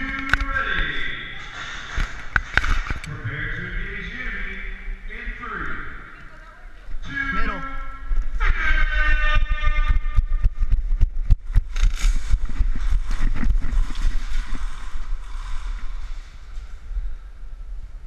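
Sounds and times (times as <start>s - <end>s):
footsteps: 0.0s - 3.2s, 7.9s - 17.2s
wind rumble on microphone: 8.0s - 18.0s.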